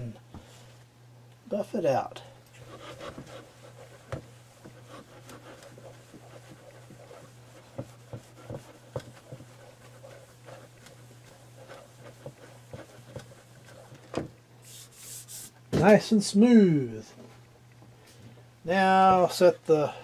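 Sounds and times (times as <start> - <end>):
steady low hum: 0.0 - 20.0
cloth rubbing: 2.6 - 15.6.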